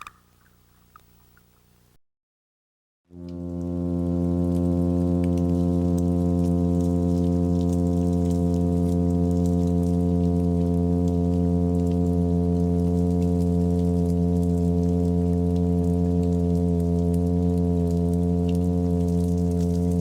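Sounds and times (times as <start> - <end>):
fish humming low drone: 0.0 - 1.9, 3.1 - 20.0.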